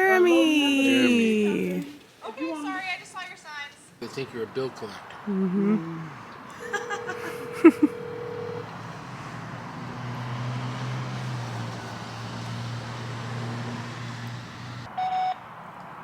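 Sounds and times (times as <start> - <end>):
vehicle engine humming: 4.0 - 14.9
electronic beep: 6.6 - 8.6.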